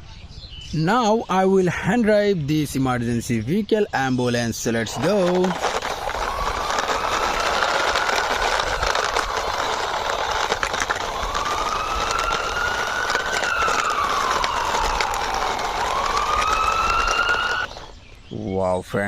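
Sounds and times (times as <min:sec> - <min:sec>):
toy wheels whirring: 0:04.2 - 0:18.3.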